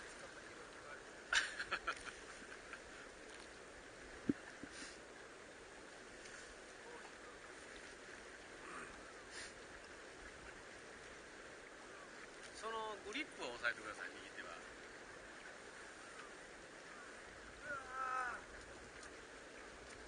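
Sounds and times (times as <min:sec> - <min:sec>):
water and wind noise: 0:00.0 - 0:20.0
faint ticks: 0:18.6 - 0:20.0.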